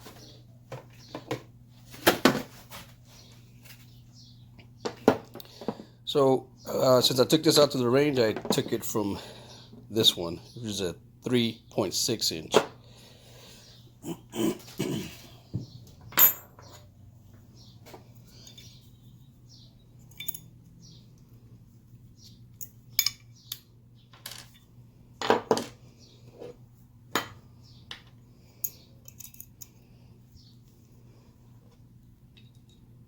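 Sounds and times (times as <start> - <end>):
faint steady hum: 0.0 - 33.0
metal parts clicking and clinking: 20.0 - 20.6, 22.5 - 24.7, 28.6 - 29.8.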